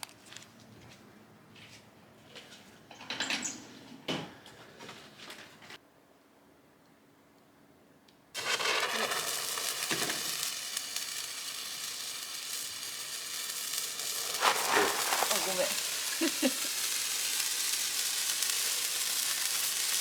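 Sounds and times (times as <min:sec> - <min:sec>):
steady sizzle: 0:08.4 - 0:20.0.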